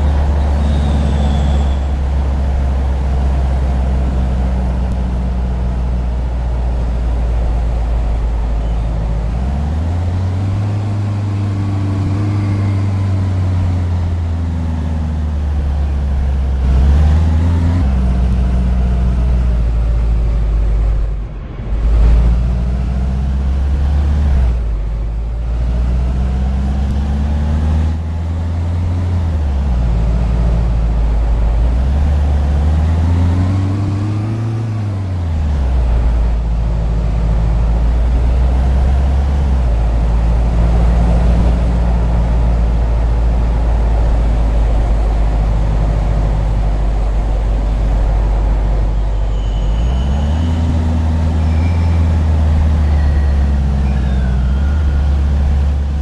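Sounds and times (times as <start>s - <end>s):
vehicle engine droning: 0.0s - 56.0s.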